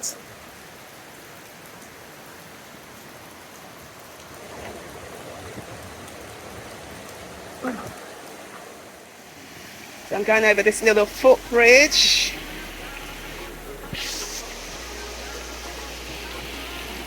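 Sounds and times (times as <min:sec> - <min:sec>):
water hissing: 0:09.3 - 0:17.0.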